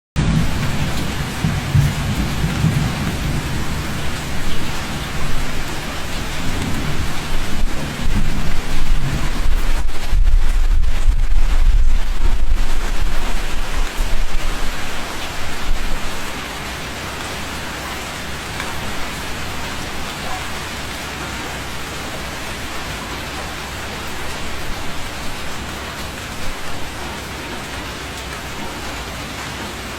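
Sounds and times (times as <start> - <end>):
rolling thunder rumble: 0.2 - 16.4
heavy rain hissing: 0.2 - 29.9.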